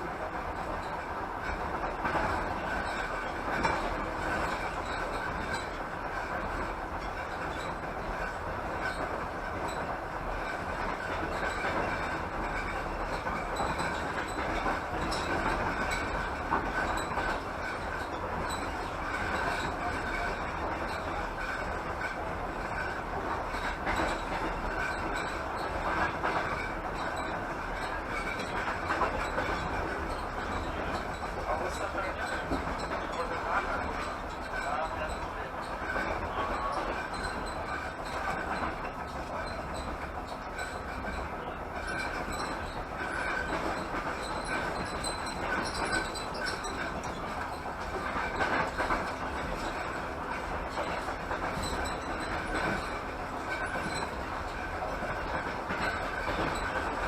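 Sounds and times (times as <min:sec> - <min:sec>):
train wheels rumbling on rail: 0:00.0 - 0:57.0.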